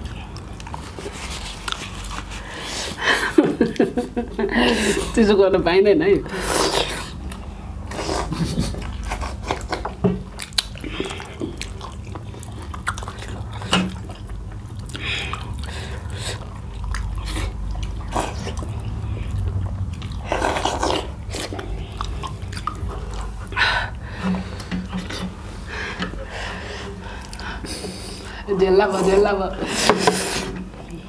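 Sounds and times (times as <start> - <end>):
chewing and biting food: 0.0 - 3.0, 6.5 - 23.6.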